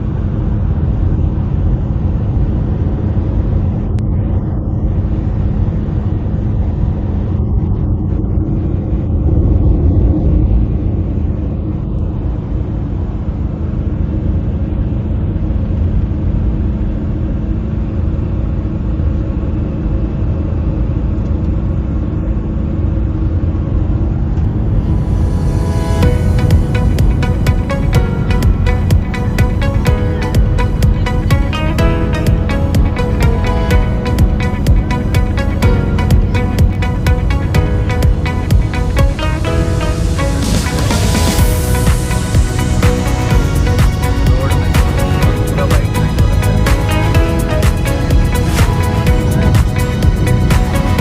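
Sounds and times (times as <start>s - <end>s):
car driving on road: 24.2s - 51.0s.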